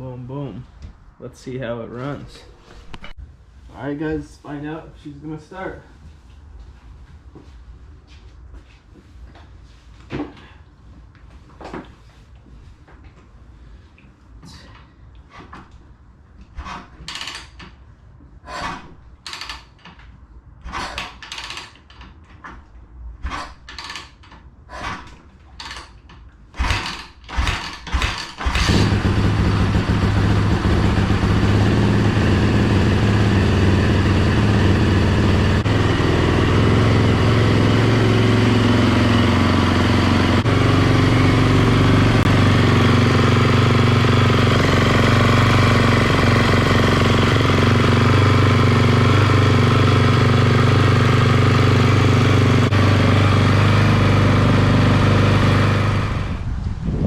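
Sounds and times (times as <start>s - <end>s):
motorcycle engine kick-starting: 26.6s - 56.4s
motorcycle engine idling: 28.7s - 56.2s.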